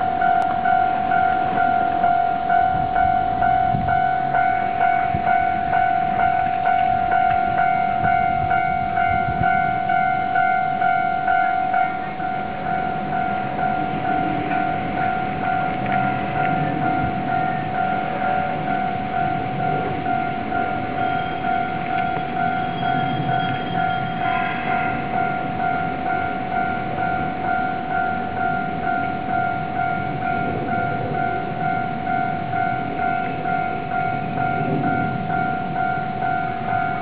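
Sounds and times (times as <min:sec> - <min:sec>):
level-crossing warning bell ringing: 0:00.0 - 0:37.0
train rumbling past: 0:00.0 - 0:37.0.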